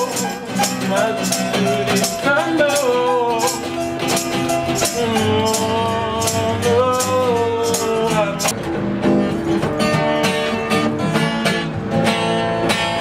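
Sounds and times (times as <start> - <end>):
tambourine beat: 0.0 - 8.5
acoustic guitar chords: 0.0 - 13.0
person singing long notes: 4.6 - 8.5.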